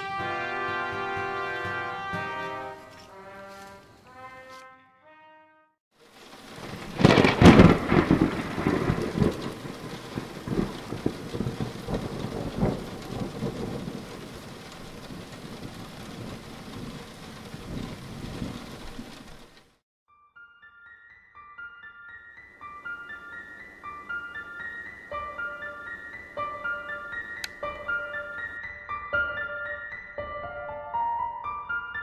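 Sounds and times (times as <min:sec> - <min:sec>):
brass music: 0:00.0 - 0:05.8
steady rain: 0:06.0 - 0:19.8
thunderclap rumbling: 0:06.1 - 0:19.8.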